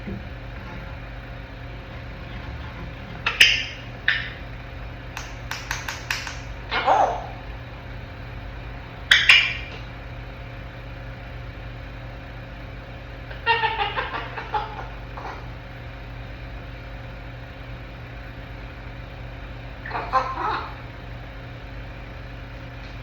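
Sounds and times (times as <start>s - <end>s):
steady low hum: 0.0s - 23.0s
parrot chattering and calling: 3.2s - 4.4s, 5.2s - 7.5s, 9.1s - 9.9s, 13.3s - 15.6s, 19.8s - 20.9s
parrot click: 5.2s - 6.6s.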